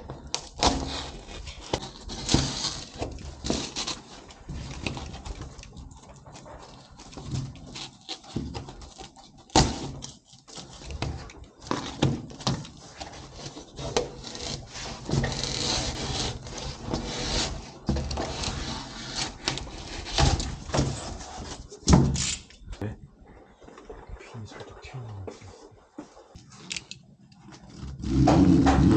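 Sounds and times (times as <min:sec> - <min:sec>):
board scraping on board: 0:12.8 - 0:22.0, 0:27.6 - 0:28.9.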